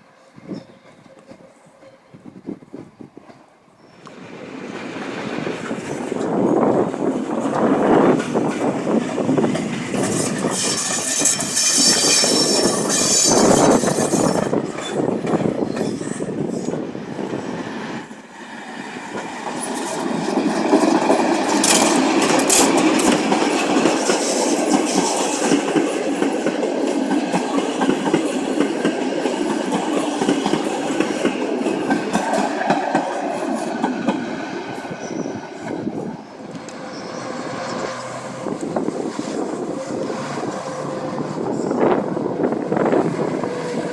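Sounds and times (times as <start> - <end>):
train rumble: 0.0 - 43.9
train wheels clattering over rail joints: 4.8 - 17.3, 19.0 - 43.9
high wheel squeal: 9.9 - 16.8, 34.5 - 43.9.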